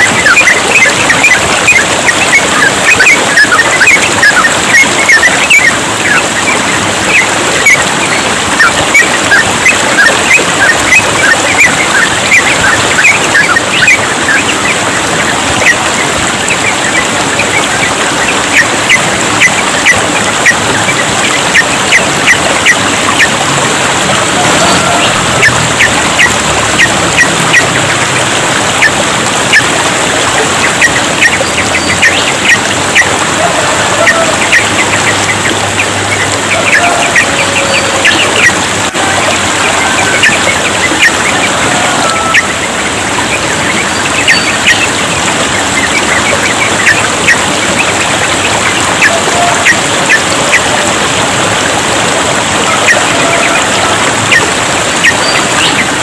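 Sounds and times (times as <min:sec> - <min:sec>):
trickling water: 0:00.0 - 0:56.0
bird chirping song: 0:30.6 - 0:32.6, 0:42.1 - 0:47.0, 0:55.0 - 0:56.0.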